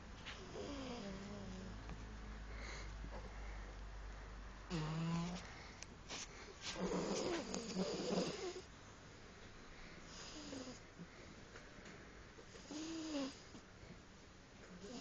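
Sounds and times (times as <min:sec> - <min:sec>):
cat snoring: 0:00.4 - 0:01.8, 0:04.7 - 0:05.4, 0:06.7 - 0:08.7, 0:10.1 - 0:10.8, 0:12.5 - 0:13.5, 0:14.8 - 0:15.0.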